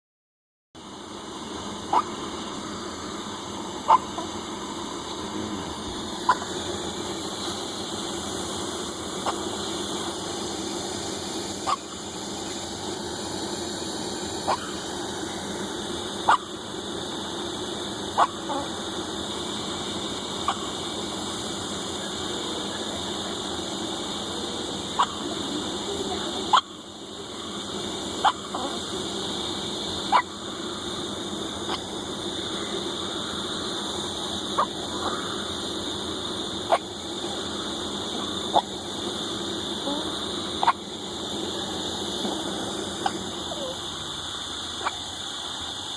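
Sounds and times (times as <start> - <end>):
background hum: 0.8 - 45.9
person hiccuping: 5.1 - 6.6, 14.5 - 14.8.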